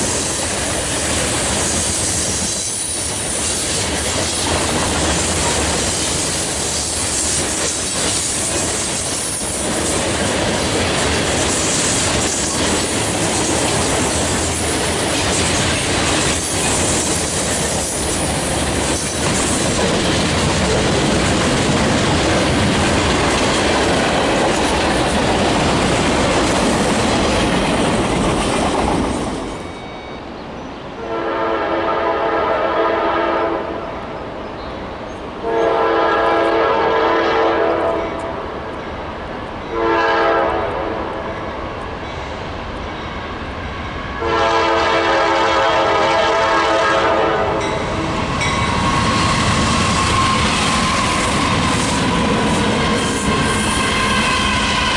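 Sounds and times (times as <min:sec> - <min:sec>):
train passing with clickety-clack: 0:00.0 - 0:54.9
locomotive air horn chord: 0:31.0 - 0:33.8, 0:35.4 - 0:38.2, 0:39.7 - 0:41.0, 0:44.2 - 0:47.7.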